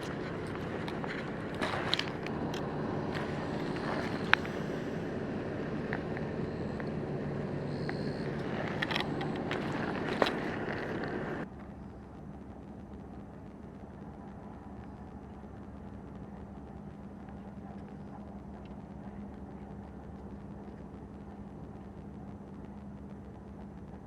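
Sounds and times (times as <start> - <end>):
sharp clicks: 0.0 - 11.4
low hum: 0.0 - 11.5.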